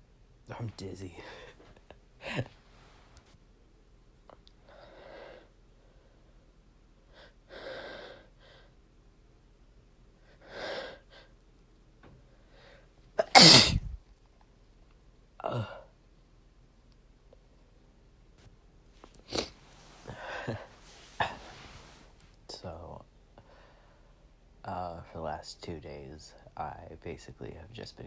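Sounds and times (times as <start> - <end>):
loud chesty sneeze: 13.2 - 14.0, 19.2 - 19.6
person breathing: 19.4 - 21.9, 23.4 - 24.2.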